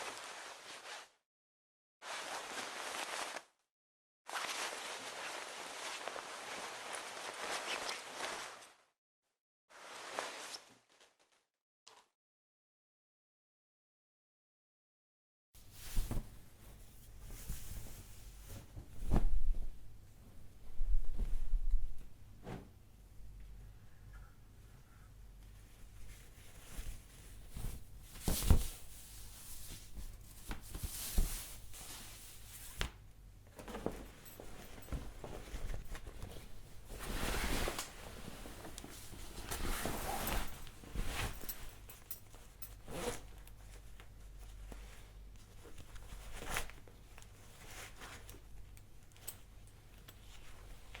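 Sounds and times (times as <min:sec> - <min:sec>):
fabric rustling: 0:00.0 - 0:01.2, 0:02.0 - 0:03.5, 0:04.3 - 0:08.8, 0:09.8 - 0:11.4, 0:15.6 - 0:22.7, 0:25.6 - 0:32.9, 0:33.6 - 0:48.4
zipper being pulled: 0:02.1 - 0:03.5, 0:42.6 - 0:43.4.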